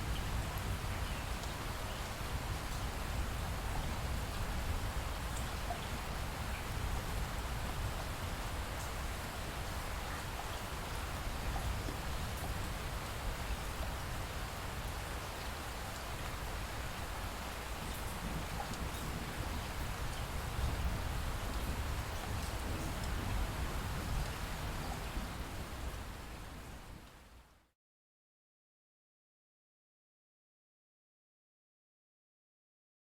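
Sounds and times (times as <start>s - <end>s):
steady rain falling: 0.0s - 27.8s
raindrop ticks: 17.9s - 19.2s, 21.5s - 23.4s.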